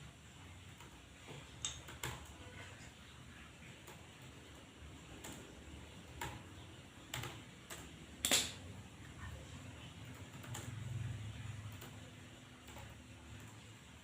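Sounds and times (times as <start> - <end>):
computer keyboard keystrokes: 1.6 - 2.4, 6.1 - 8.6, 10.0 - 10.8, 11.6 - 13.6.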